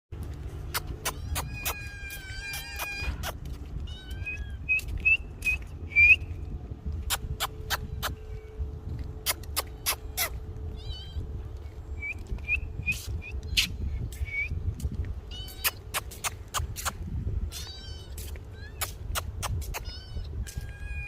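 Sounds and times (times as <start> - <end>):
low steady rumble: 0.2 - 21.0
kitten mewing: 0.7 - 3.4.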